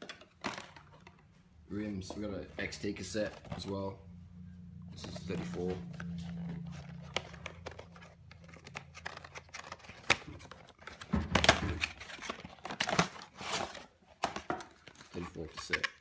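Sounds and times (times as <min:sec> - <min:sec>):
packaging crinkling and tearing: 0:05.4 - 0:16.0.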